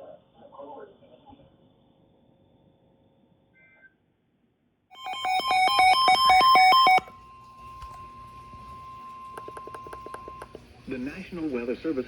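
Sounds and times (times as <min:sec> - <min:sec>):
electronic two-tone beeping: 0:05.0 - 0:10.6
steady single-pitch alarm tone: 0:05.0 - 0:10.8.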